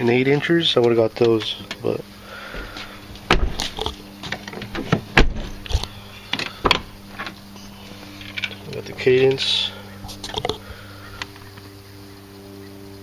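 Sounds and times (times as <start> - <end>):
steady low hum: 0.0 - 13.0
sharp knocks and clicks: 3.2 - 7.4.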